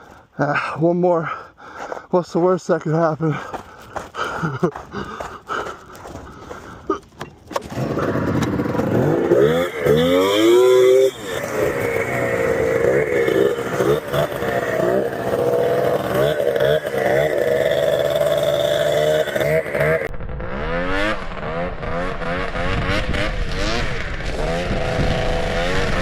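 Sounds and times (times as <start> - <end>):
snowmobile engine revving: 7.6 - 26.0.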